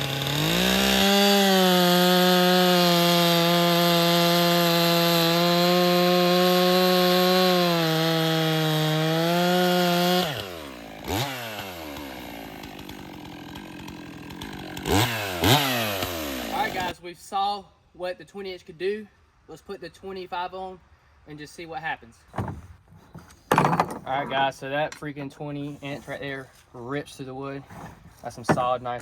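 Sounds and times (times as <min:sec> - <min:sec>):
chainsaw cutting wood: 0:00.0 - 0:17.0
chainsaw idling and revving: 0:00.0 - 0:17.0.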